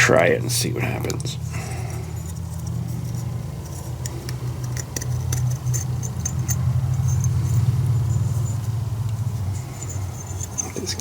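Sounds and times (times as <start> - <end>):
low hum: 0.0 - 11.0
metal piston rings clicking: 0.8 - 11.0.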